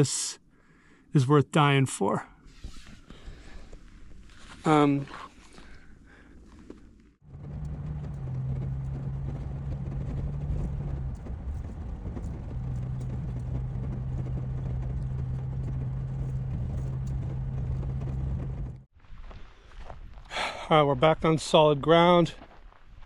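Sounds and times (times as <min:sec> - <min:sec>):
motor vehicle humming: 0:06.7 - 0:18.9.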